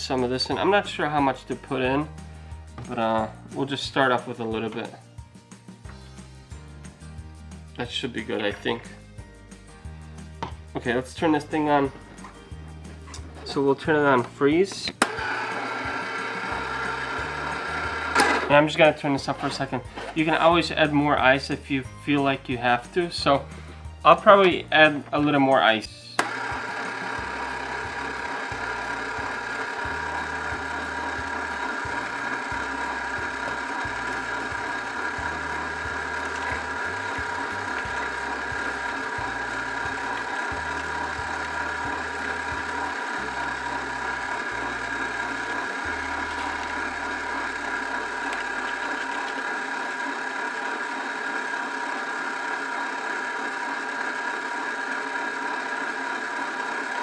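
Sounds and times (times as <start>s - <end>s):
slush maker motor whining: 13.1s - 20.3s, 26.2s - 57.0s.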